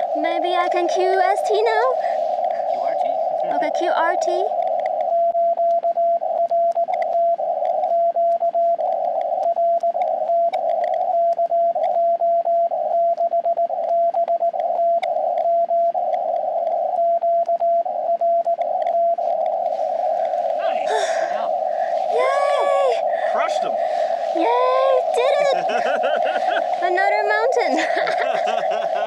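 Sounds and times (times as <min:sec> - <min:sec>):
morse code beeps: 0:00.0 - 0:25.8, 0:26.6 - 0:29.0
radio hiss bursts: 0:01.2 - 0:03.6, 0:19.6 - 0:29.0.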